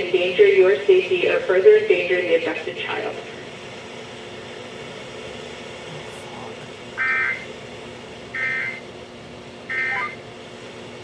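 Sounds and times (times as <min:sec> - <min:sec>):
low radio hiss and hum: 0:09.7 - 0:11.0.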